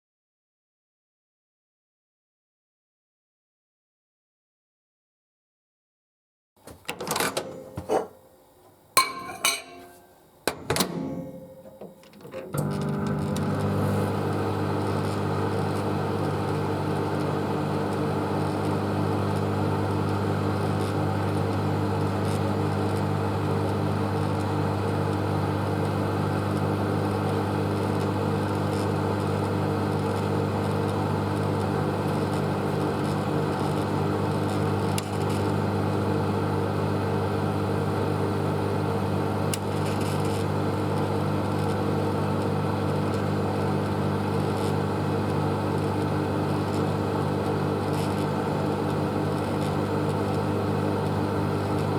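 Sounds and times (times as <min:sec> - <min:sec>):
microwave oven humming: 0:07.0 - 0:51.9.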